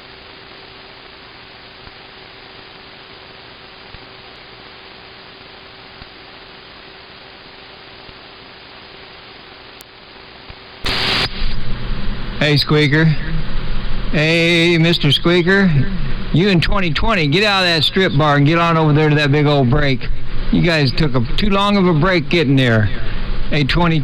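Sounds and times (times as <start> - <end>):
radio static hiss: 0.0 - 24.0.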